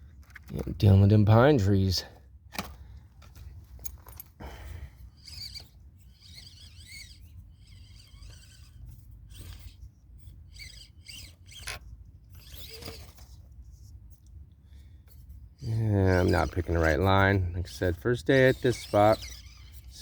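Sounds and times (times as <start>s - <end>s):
toy motor and servo whining: 3.9s - 20.0s.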